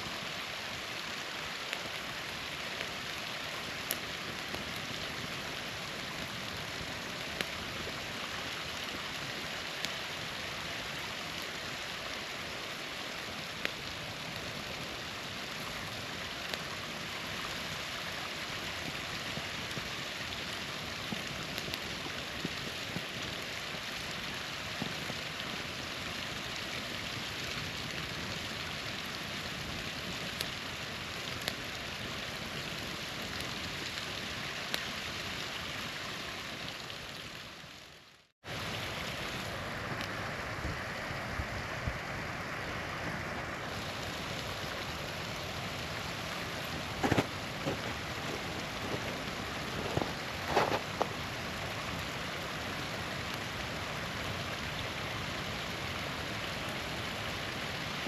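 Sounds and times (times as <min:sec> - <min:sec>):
campfire crackling and popping: 0:00.0 - 0:42.0, 0:42.6 - 0:58.0
small waterfall rushing: 0:00.0 - 0:58.0.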